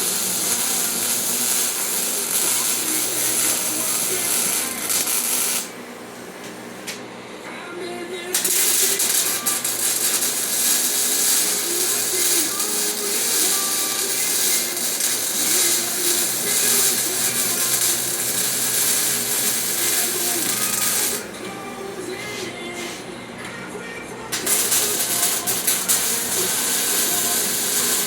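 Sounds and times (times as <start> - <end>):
welding arc crackling: 0.0 - 5.8, 8.3 - 21.4, 24.3 - 28.0.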